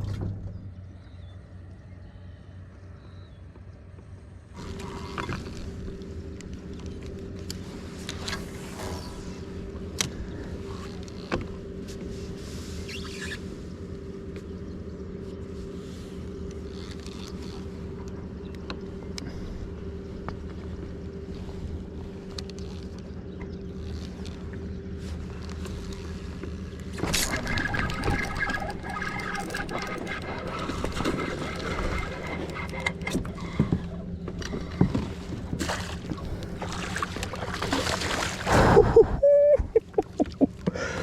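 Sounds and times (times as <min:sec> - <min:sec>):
steady low hum: 0:00.0 - 0:41.0
fishing reel and line: 0:16.5 - 0:17.8, 0:22.3 - 0:33.6
loud water splashes: 0:35.6 - 0:39.1.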